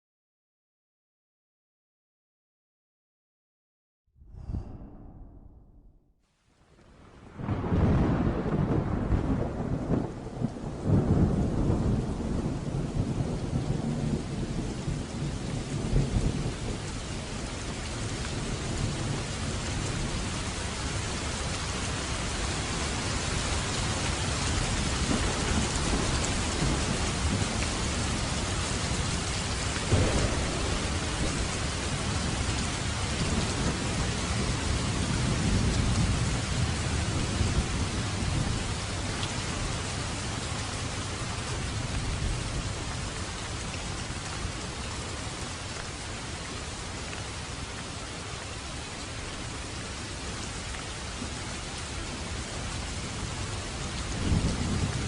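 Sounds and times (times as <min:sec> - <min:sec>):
thunder rumbling: 0:04.2 - 0:06.1, 0:07.2 - 0:39.2
steady rain: 0:06.4 - 0:55.0.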